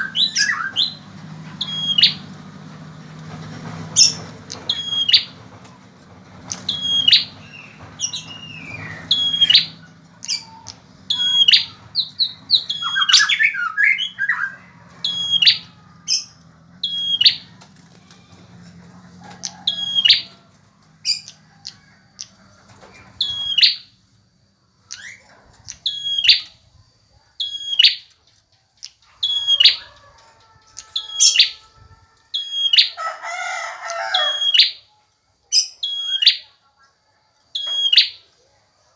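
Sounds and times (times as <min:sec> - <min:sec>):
bird twittering: 0:00.0 - 0:01.0, 0:01.6 - 0:02.3, 0:04.0 - 0:05.4, 0:06.5 - 0:17.6, 0:19.5 - 0:20.3, 0:23.2 - 0:23.9, 0:24.9 - 0:26.6, 0:30.9 - 0:31.6
bird chirping: 0:00.0 - 0:02.7, 0:03.8 - 0:05.5, 0:06.4 - 0:18.8, 0:19.4 - 0:20.4, 0:21.0 - 0:24.0, 0:24.8 - 0:31.7, 0:37.5 - 0:38.3.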